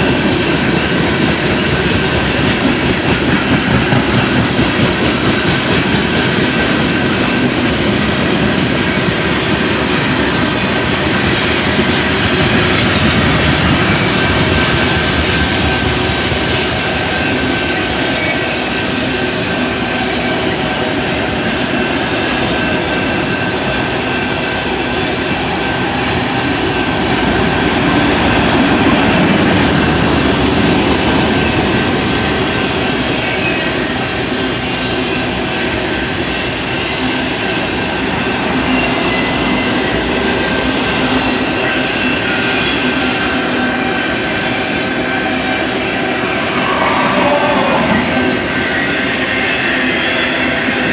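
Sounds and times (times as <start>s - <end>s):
rail joint clicks: 0.0s - 42.0s
freight train wheels rumbling: 0.0s - 50.9s
high wheel squeal: 42.0s - 50.3s.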